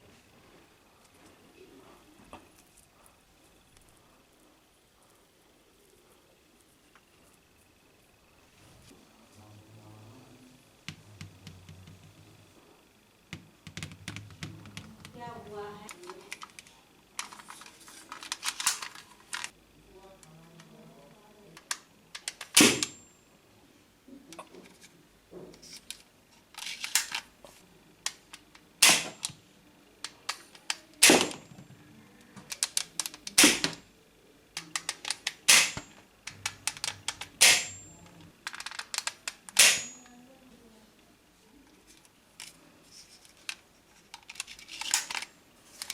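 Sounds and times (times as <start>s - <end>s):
toy gun snapping shots: 21.6s - 23.0s, 28.8s - 29.4s, 30.3s - 31.4s, 32.5s - 33.8s, 34.6s - 35.8s, 36.4s - 37.8s, 38.6s - 40.0s.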